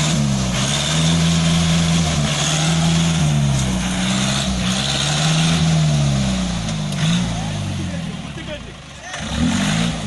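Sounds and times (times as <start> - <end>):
off-road vehicle engine revving: 0.0 - 10.0.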